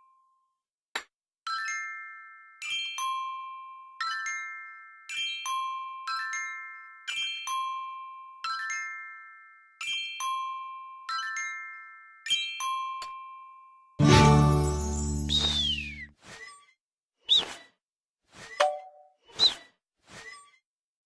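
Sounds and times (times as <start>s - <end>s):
bell-like struck notes: 14.0s - 15.6s.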